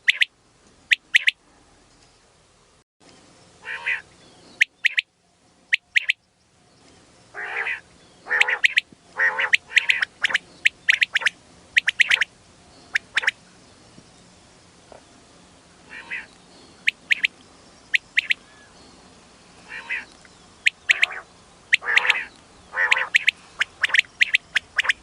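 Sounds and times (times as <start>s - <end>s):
quail calling: 0.0s - 0.3s, 0.9s - 1.4s, 3.6s - 4.0s, 4.6s - 5.1s, 5.7s - 6.2s, 7.4s - 12.3s, 12.9s - 13.4s, 15.9s - 17.3s, 17.9s - 18.7s, 19.6s - 25.0s.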